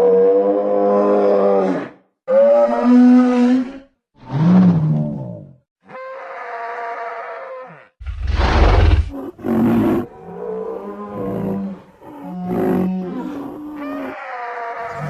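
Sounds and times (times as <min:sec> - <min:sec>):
creature calls: 0:11.2 - 0:15.0.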